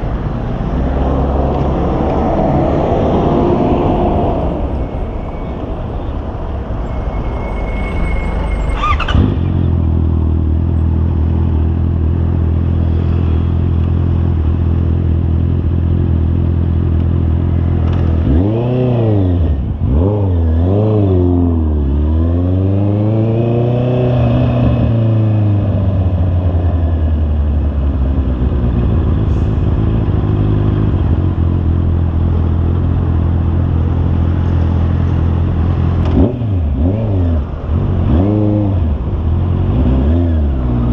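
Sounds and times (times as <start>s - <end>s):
motorcycle engine revving: 8.8s - 26.4s, 30.0s - 40.9s.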